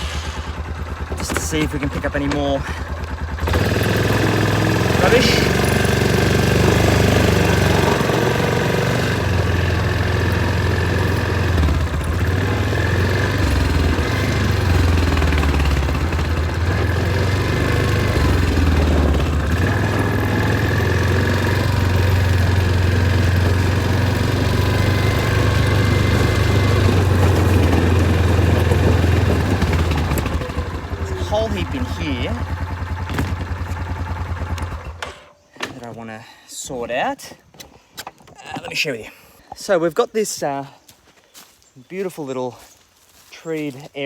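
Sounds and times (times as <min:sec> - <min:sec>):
quad bike engine running: 0:00.0 - 0:35.2.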